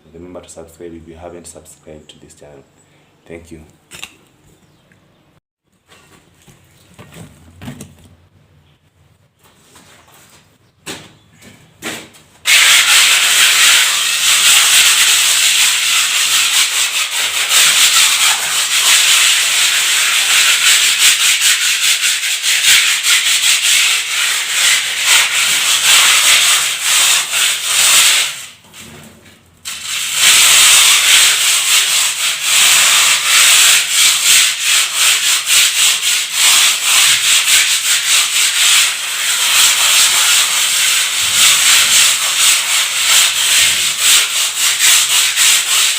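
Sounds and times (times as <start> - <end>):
sandpaper rubbing on wall: 11.8 - 29.0, 29.7 - 45.9.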